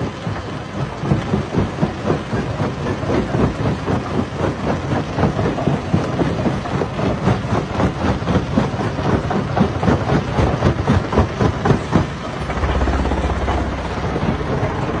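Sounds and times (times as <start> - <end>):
crusher machine low drone: 10.4 - 15.0.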